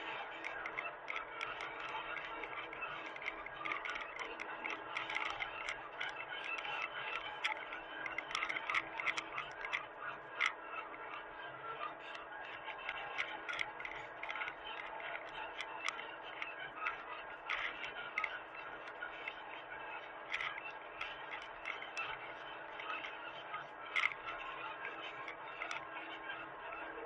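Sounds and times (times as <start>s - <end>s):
clicks and clanks: 0.4s - 9.8s, 12.1s - 19.4s, 20.3s - 23.1s, 23.9s - 25.9s.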